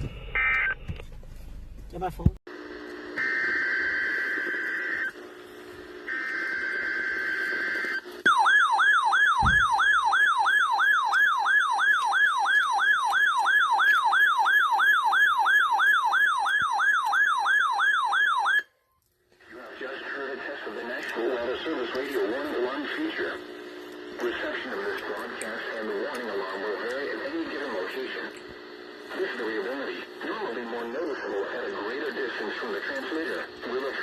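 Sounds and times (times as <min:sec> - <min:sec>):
warbling siren-like alert tone: 0:06.2 - 0:18.7.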